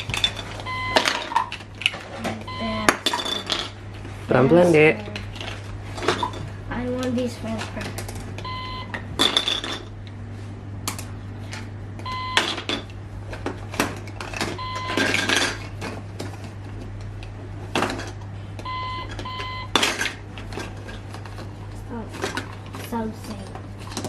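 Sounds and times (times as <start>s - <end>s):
plastic toys knocking and rattling: 0.0s - 3.8s, 5.0s - 10.0s, 10.8s - 24.0s
short electronic beeps: 0.7s - 1.0s, 2.4s - 2.9s, 8.4s - 8.9s, 12.1s - 12.4s, 18.7s - 19.7s.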